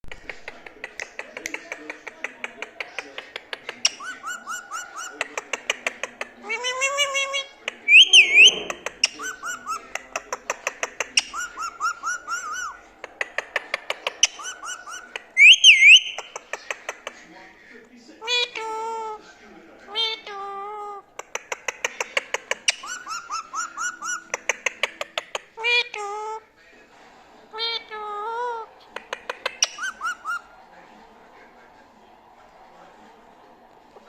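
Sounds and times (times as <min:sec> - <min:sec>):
parrot chirping: 0:02.4 - 0:17.2, 0:18.2 - 0:19.2, 0:19.9 - 0:26.4, 0:27.5 - 0:30.7
parrot shrill squawks: 0:14.4 - 0:16.2
parrot whistle-like call: 0:15.4 - 0:16.2.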